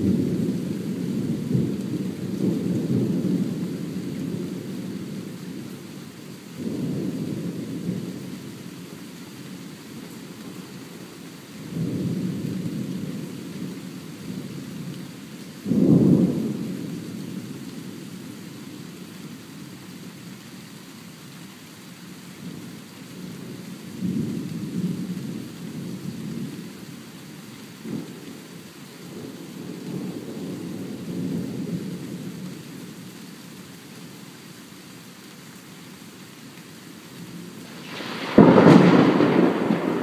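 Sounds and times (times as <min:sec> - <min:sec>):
steady hiss of rain: 0:00.0 - 0:40.0
rolling rumbles of thunder: 0:15.6 - 0:18.4, 0:37.2 - 0:40.0
sharp thunderclap: 0:37.7 - 0:40.0.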